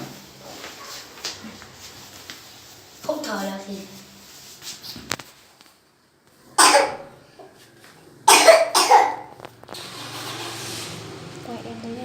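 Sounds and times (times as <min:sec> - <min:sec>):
person coughing: 0:06.6 - 0:07.1, 0:08.3 - 0:09.3.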